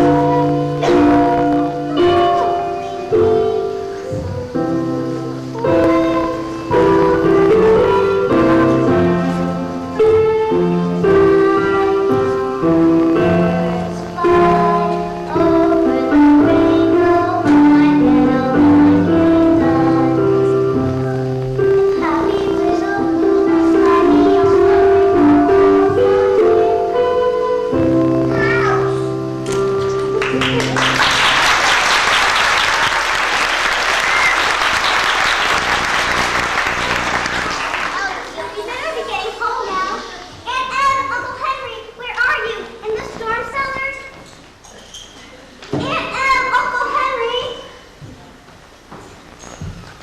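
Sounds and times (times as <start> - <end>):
children singing: 0.0 - 29.2
piano accompaniment: 0.0 - 40.0
audience applauding: 30.2 - 38.7.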